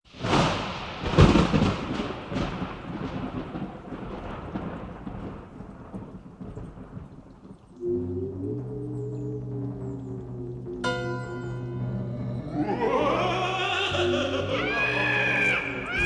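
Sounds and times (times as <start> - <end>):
rain hiss: 0.0 - 16.0
thunder crack and rumble: 0.1 - 11.6.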